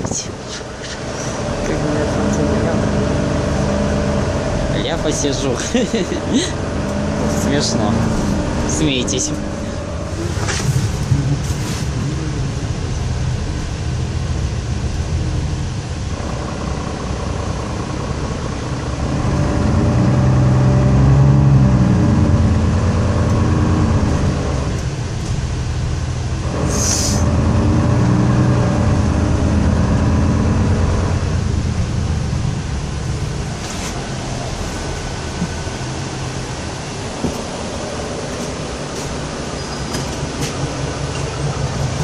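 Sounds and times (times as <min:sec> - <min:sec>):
bus diesel engine accelerating: 0:00.0 - 0:42.0
air hiss: 0:26.7 - 0:27.3.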